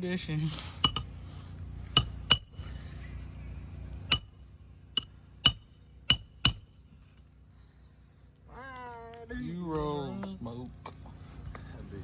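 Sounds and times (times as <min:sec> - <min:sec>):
hammer striking nails: 0:02.0 - 0:02.6, 0:04.1 - 0:04.4, 0:05.0 - 0:06.8.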